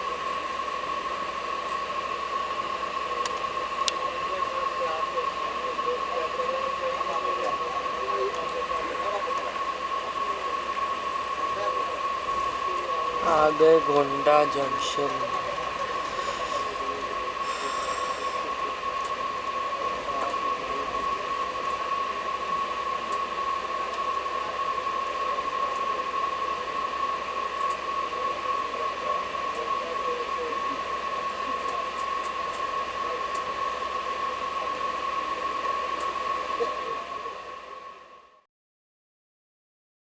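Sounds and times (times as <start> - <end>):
high hum: 0.0 - 38.4
even hiss: 11.3 - 18.8.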